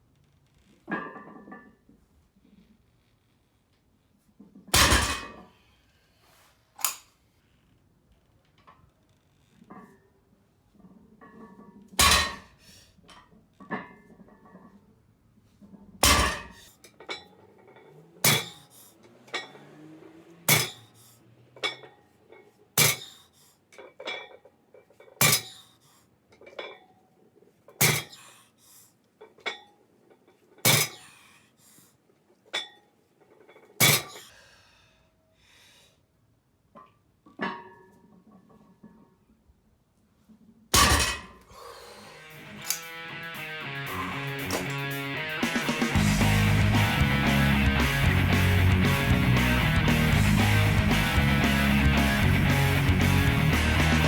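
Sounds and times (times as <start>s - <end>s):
barbell clanking on floor: 12.0s - 12.5s, 16.0s - 16.6s, 18.2s - 18.6s, 20.5s - 20.9s
short metallic ring: 18.2s - 18.6s, 20.5s - 20.9s.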